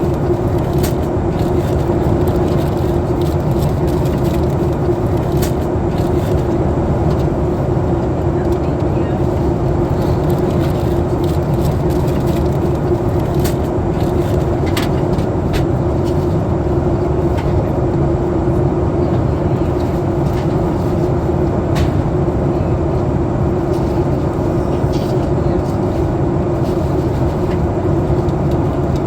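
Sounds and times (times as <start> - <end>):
airliner cabin airflow and engine hum: 0.0 - 29.0.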